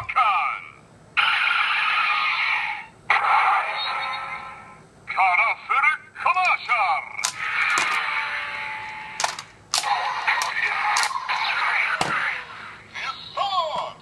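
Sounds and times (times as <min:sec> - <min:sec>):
toy gun crackly buzzing effects: 0:07.2 - 0:11.6.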